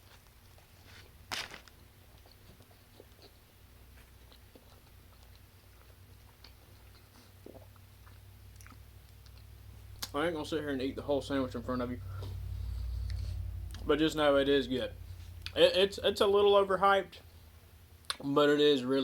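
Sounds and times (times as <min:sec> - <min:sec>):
faint chewing: 0:00.0 - 0:10.2, 0:12.1 - 0:13.8.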